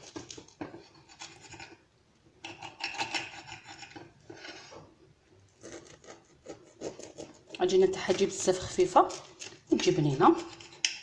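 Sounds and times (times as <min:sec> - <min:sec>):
knife scraping: 0:00.0 - 0:01.8, 0:02.4 - 0:04.9, 0:05.5 - 0:11.0
knife sawing through pie crust: 0:05.6 - 0:10.8.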